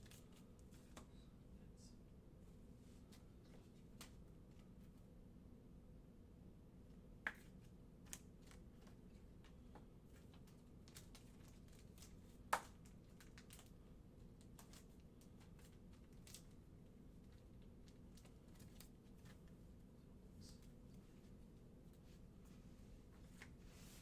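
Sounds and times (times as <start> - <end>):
low room hum: 0.0 - 24.0
trading cards clicking and rustling: 7.3 - 16.6, 17.2 - 19.4.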